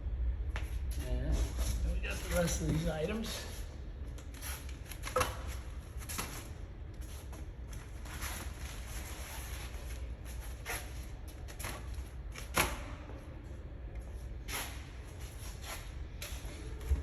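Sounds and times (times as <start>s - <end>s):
low steady rumble: 0.0s - 4.9s.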